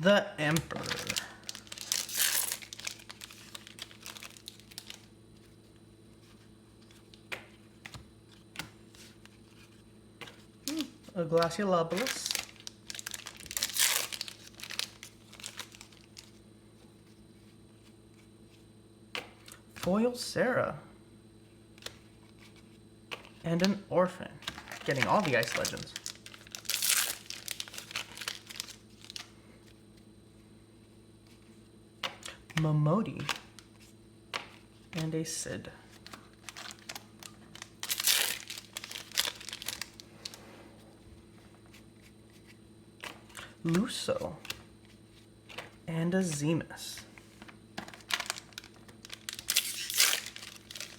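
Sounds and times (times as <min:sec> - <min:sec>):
packaging and cards rustling: 0:00.0 - 0:16.4, 0:24.4 - 0:29.8, 0:35.9 - 0:40.4, 0:41.2 - 0:50.9
faint steady hum: 0:00.0 - 0:50.9
plastic wrapper crinkling: 0:00.6 - 0:05.1, 0:10.7 - 0:16.4, 0:24.5 - 0:29.3, 0:35.9 - 0:40.4, 0:47.4 - 0:50.9.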